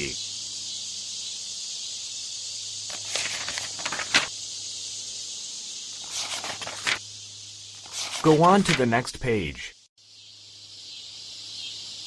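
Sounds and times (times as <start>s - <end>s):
scratchy crackles: 2.9s - 4.3s, 6.0s - 7.0s.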